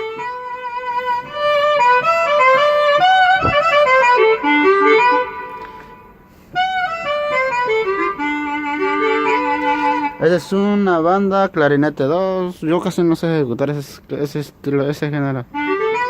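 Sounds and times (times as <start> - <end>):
synthesizer clarinet melody: 0.0 - 10.9, 15.5 - 16.0.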